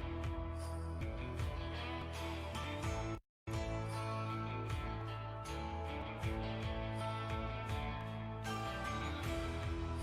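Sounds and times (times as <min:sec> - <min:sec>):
background music sustained notes: 0:00.0 - 0:10.0.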